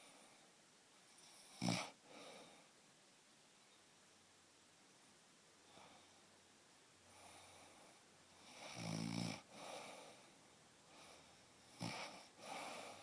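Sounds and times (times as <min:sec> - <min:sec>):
noisy breath out: 0:09.5 - 0:13.0.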